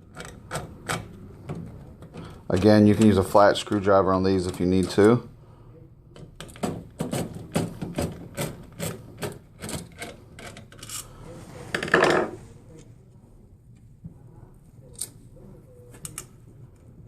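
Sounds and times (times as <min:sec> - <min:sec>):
long screwdriver scrape: 0:08.4 - 0:11.9.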